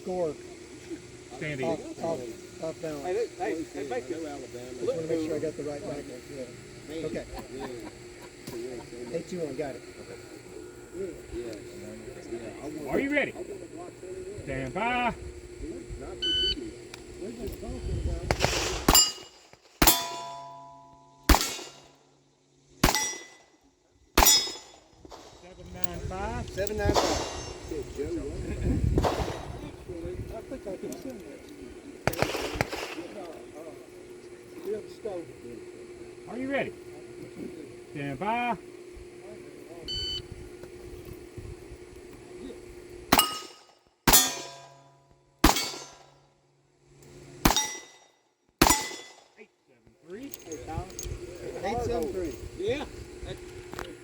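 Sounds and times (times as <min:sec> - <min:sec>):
struck steel plate ringing: 0:18.9 - 0:21.9, 0:22.8 - 0:23.5, 0:24.2 - 0:24.8, 0:43.1 - 0:46.2, 0:47.5 - 0:49.3.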